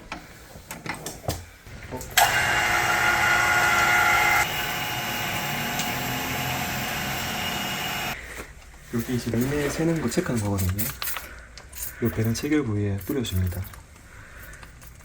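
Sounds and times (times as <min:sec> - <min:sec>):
whirring hiss with whine: 0:01.8 - 0:08.2.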